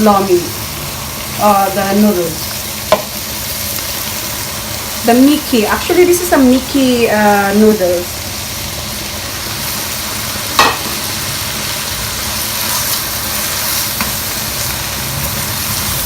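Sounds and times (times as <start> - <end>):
food sizzling in a pan: 0.0 - 16.0.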